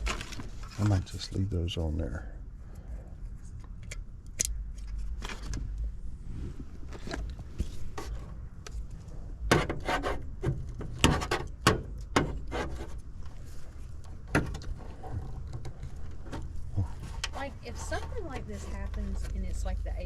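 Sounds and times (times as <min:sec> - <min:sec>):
rubbing and scraping: 0:04.9 - 0:19.8.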